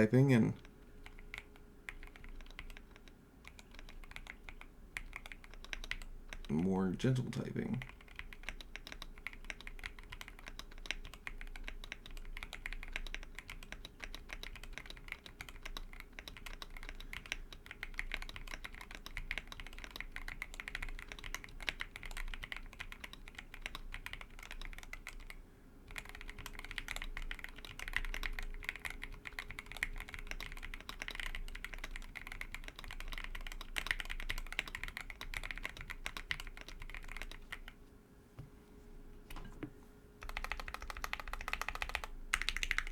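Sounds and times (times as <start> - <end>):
mechanical keyboard typing: 0.0 - 37.8, 40.2 - 42.9.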